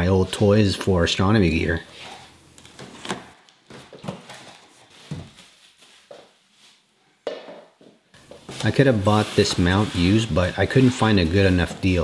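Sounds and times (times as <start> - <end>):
packaging rustling and knocking: 2.7 - 5.6.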